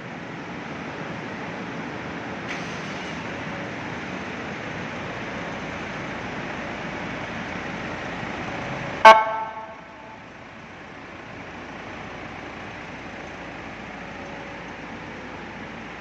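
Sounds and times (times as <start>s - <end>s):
siren horn blast: 9.0s - 10.2s.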